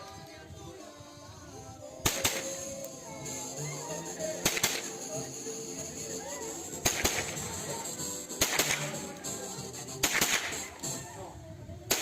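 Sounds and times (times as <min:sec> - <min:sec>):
backing music: 0:00.0 - 0:11.3
rifle shots cracking: 0:02.0 - 0:02.6, 0:04.4 - 0:05.0, 0:06.8 - 0:07.5, 0:08.4 - 0:09.0, 0:10.0 - 0:10.6.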